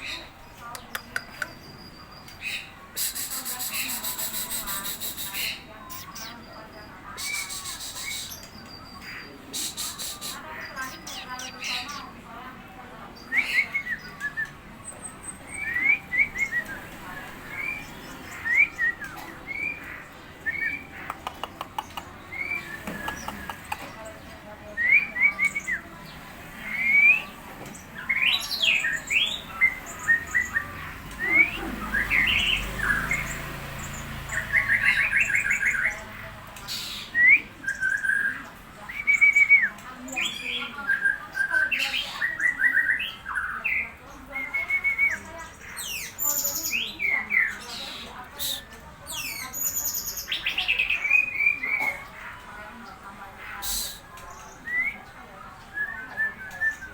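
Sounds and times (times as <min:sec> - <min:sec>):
songbird whistled chirps: 0:00.1 - 0:06.4, 0:13.2 - 0:23.9, 0:24.8 - 0:25.8, 0:36.8 - 0:51.9, 0:53.7 - 0:56.9.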